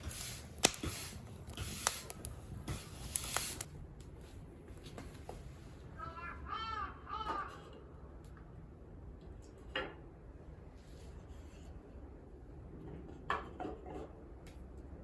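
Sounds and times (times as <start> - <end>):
sharp clicks and rustling: 0.0 - 3.7
crow cawing: 6.0 - 7.8.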